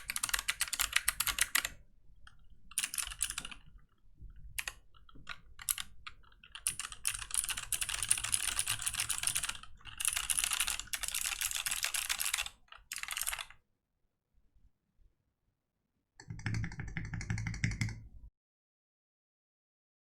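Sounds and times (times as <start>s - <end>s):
mechanical keyboard typing: 0.0s - 13.6s, 16.2s - 18.1s.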